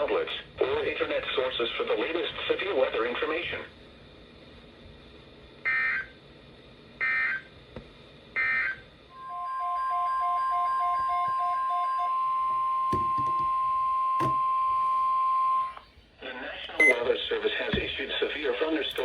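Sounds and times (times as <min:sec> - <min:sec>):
steady warning tone: 0:16.7 - 0:17.0.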